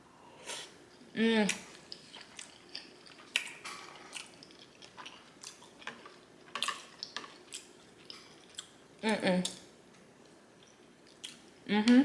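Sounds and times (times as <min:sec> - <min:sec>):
mouth chewing with wet smacks: 0:01.5 - 0:08.8.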